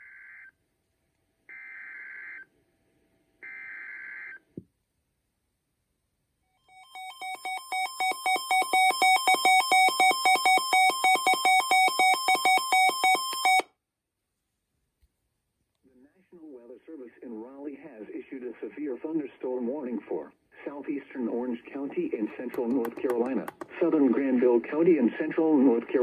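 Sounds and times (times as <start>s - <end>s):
weather alert alarm beeping: 6.8s - 13.6s.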